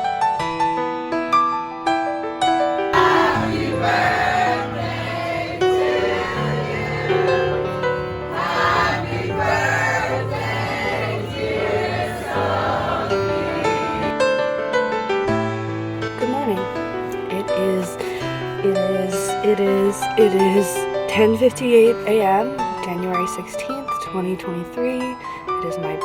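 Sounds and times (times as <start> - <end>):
choir singing: 3.0 - 14.2.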